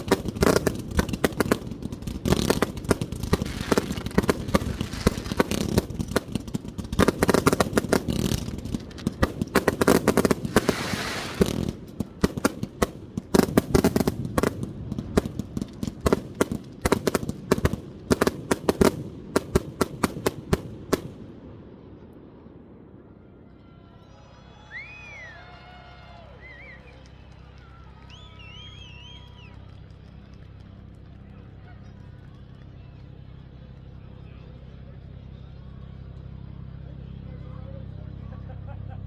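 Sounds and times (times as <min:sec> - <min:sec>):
fireworks barrage with crackle: 0:00.0 - 0:23.3.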